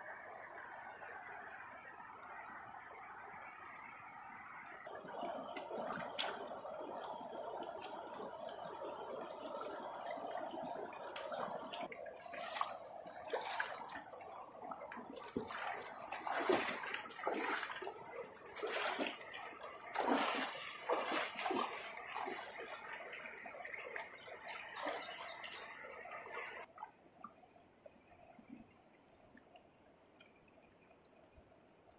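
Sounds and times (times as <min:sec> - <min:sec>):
river water splashing: 0:04.9 - 0:27.4.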